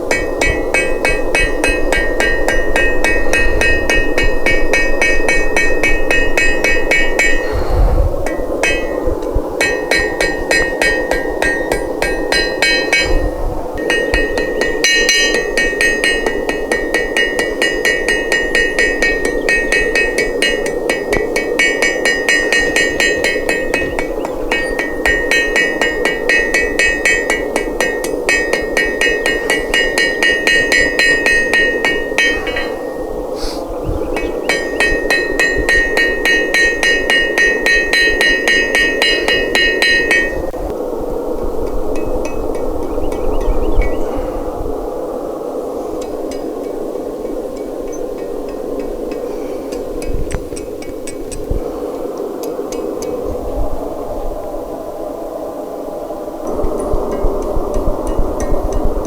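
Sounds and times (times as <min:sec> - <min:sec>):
hammer striking steel on anvil: 0:00.1 - 0:07.6, 0:08.3 - 0:09.0, 0:09.6 - 0:33.2, 0:34.2 - 0:40.6.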